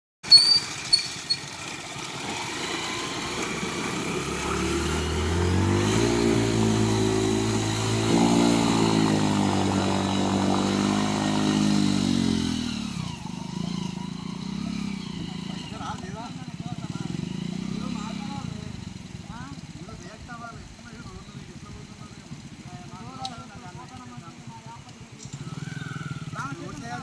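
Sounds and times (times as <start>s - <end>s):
small motorcycle engine: 0.3s - 27.0s.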